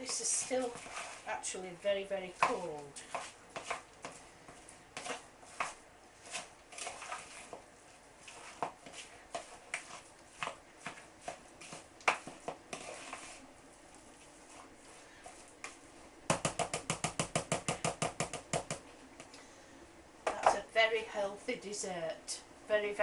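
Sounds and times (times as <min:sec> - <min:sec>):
spoon scraping a bowl: 0:00.1 - 0:01.3, 0:02.4 - 0:04.2, 0:05.0 - 0:07.6, 0:08.2 - 0:13.4.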